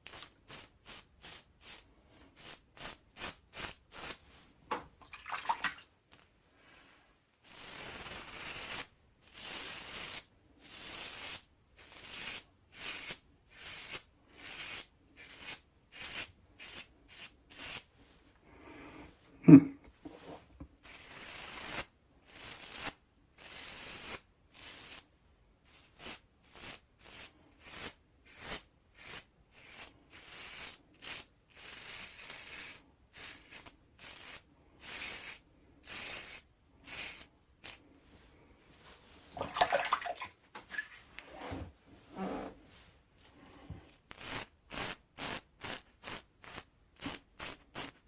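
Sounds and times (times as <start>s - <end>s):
razor scraping stubble: 25.7s - 37.8s.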